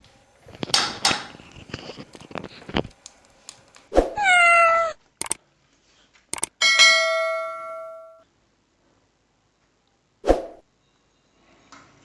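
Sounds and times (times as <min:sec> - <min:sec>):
small clicks and rustles: 0:00.4 - 0:03.9
cat meowing: 0:04.1 - 0:05.0
ringing metallic ding: 0:06.6 - 0:08.2.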